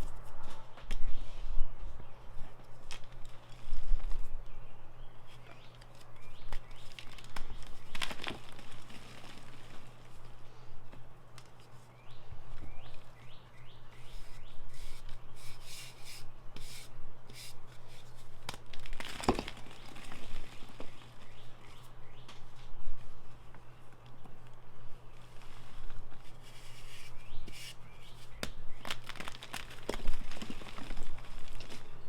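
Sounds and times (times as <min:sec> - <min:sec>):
chalk crunching by hand: 0:13.9 - 0:18.4, 0:26.2 - 0:28.5.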